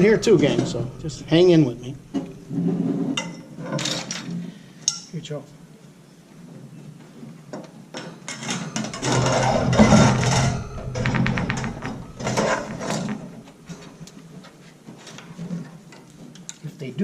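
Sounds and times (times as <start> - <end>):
wire shelf clattering on metal poles: 0.0 - 4.3, 8.0 - 14.0.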